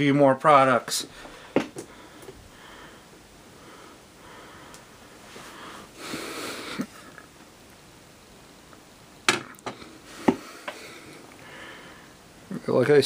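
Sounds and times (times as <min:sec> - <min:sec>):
breathy rush: 0:09.9 - 0:12.2.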